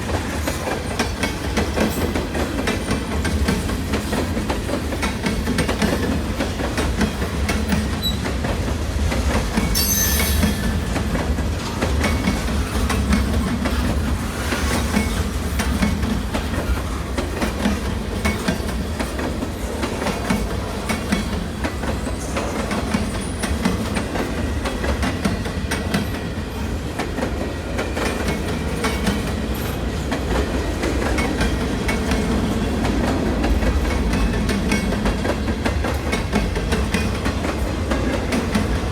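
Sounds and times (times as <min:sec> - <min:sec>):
train rumble: 0:00.0 - 0:38.9
train wheels clicking over rails: 0:00.0 - 0:38.9
train wheel squeal: 0:07.0 - 0:08.6, 0:09.4 - 0:26.8.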